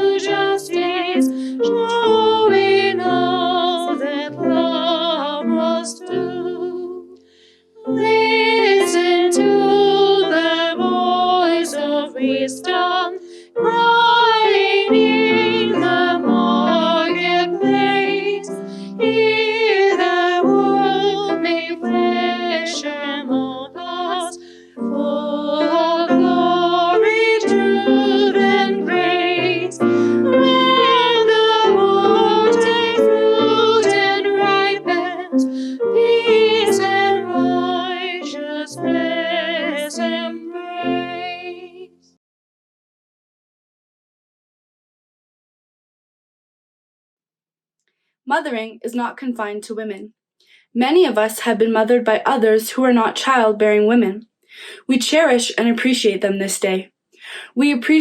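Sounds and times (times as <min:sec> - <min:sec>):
woman singing with vibrato: 0:00.0 - 0:07.1, 0:07.8 - 0:41.9
piano accompaniment: 0:00.0 - 0:07.2, 0:07.8 - 0:41.9.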